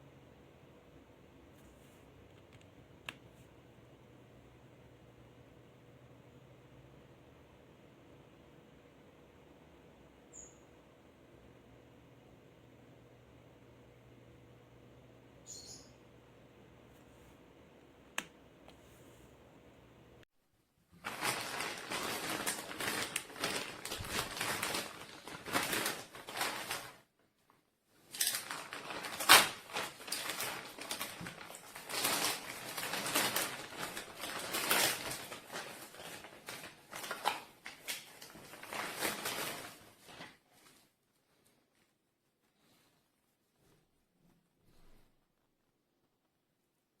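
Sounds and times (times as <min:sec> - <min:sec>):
crinkling and rustling handling: 0:20.9 - 0:45.7.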